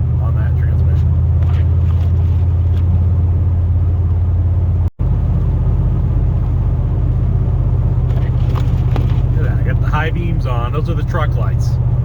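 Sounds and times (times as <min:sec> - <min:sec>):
pickup truck interior drone: 0:00.0 - 0:12.0.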